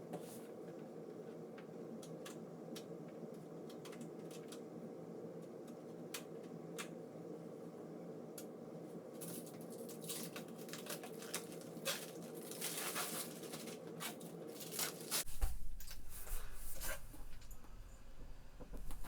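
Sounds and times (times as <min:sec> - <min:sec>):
steady hum: 0:00.0 - 0:12.5, 0:13.2 - 0:19.0
rustling handling noise: 0:09.2 - 0:17.4.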